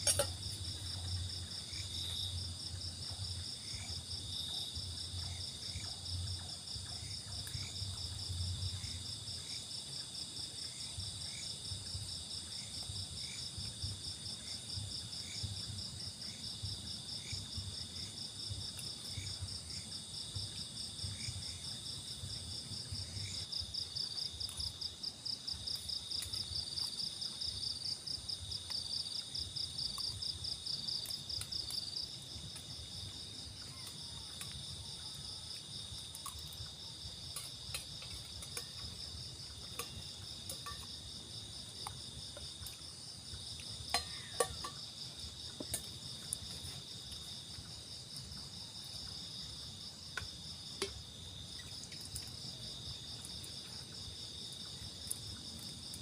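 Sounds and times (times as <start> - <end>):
night insects chirring: 0.0 - 56.0.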